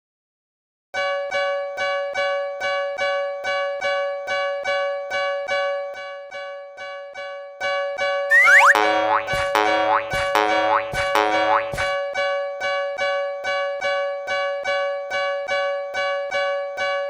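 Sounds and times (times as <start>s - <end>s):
rising boing glide: 8.3s - 12.0s.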